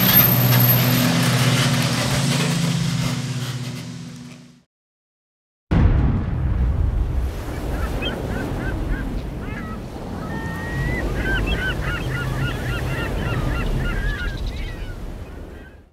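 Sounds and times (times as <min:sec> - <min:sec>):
steady low rumble: 0:05.8 - 0:11.5
flock of birds squawking: 0:07.6 - 0:15.8.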